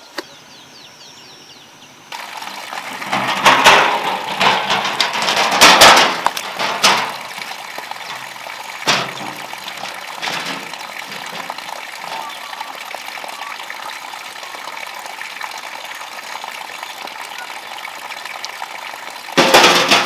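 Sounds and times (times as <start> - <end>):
water splashing and pouring: 2.1 - 20.0
knocks: 3.0 - 12.3, 19.4 - 20.0.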